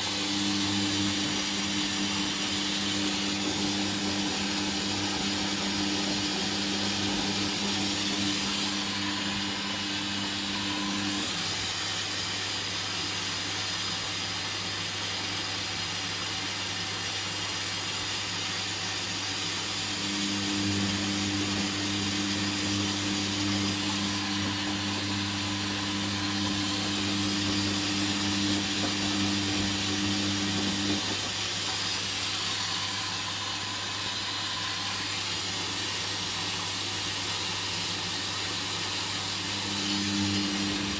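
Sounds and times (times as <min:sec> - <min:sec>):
washing machine motor humming: 0:00.0 - 0:12.5, 0:19.4 - 0:40.9.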